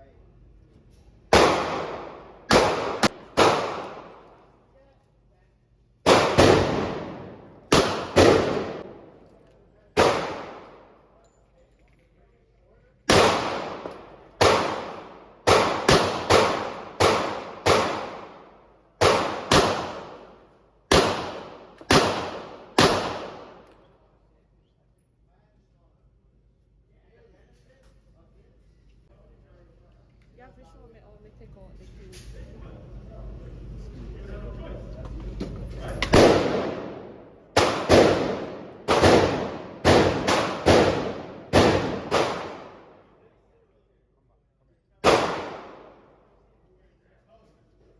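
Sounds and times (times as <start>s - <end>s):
gunshots with echo: 1.3s - 4.3s, 6.0s - 9.1s, 10.0s - 10.9s, 13.1s - 23.6s, 36.1s - 43.0s, 45.0s - 46.1s.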